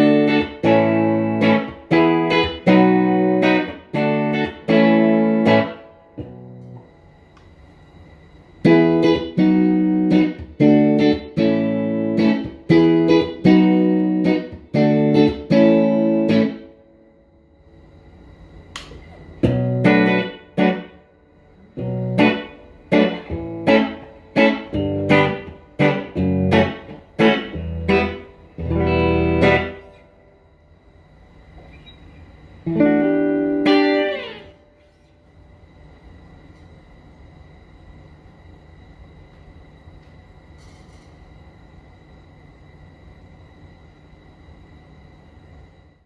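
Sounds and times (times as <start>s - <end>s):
clean electric guitar strumming chords: 0.0s - 6.9s, 8.6s - 17.0s, 19.4s - 30.3s, 32.6s - 35.1s.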